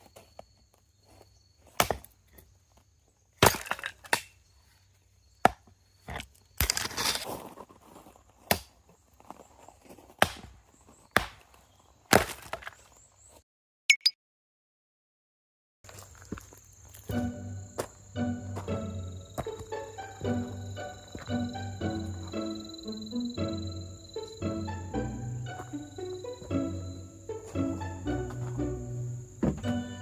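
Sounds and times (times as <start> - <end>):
insects trilling: 0.0 - 3.4, 15.9 - 30.0
wood splintering scrape: 6.6 - 7.8
wood chopping knocks: 29.4 - 29.8.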